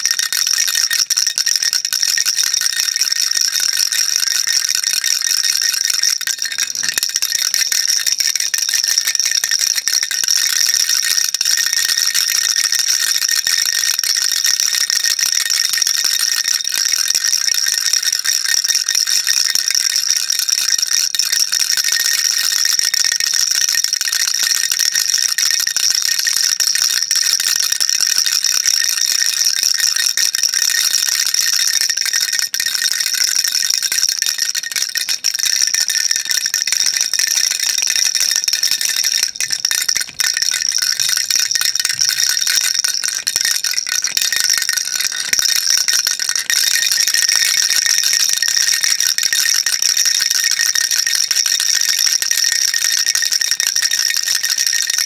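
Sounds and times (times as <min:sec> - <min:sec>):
baby rattle shaking: 0:00.0 - 0:19.0, 0:28.0 - 0:49.7.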